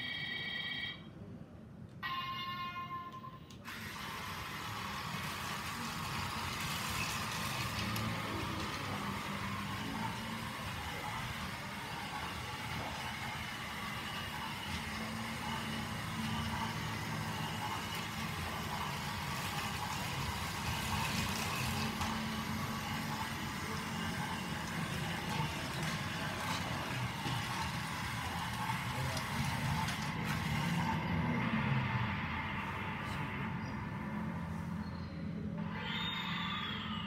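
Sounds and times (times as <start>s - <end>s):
toy train wheels clicking: 3.5s - 31.4s
toy train motor whirring: 3.6s - 31.4s.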